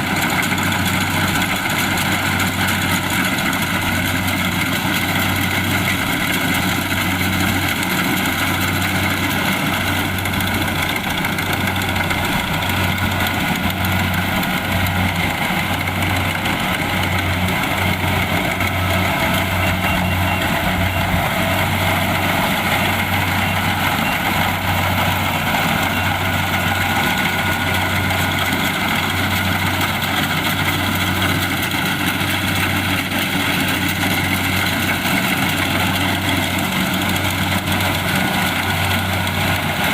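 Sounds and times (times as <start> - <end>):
combine harvester engine throbbing: 0.0 - 39.9.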